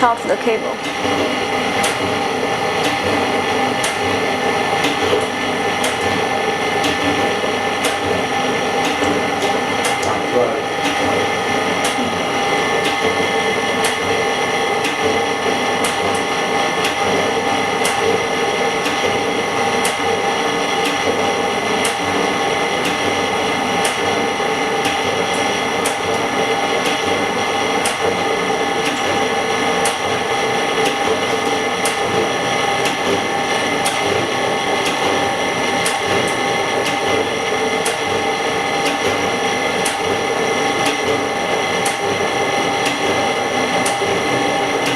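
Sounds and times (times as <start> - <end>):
machine mechanical hum: 0.0 - 44.9.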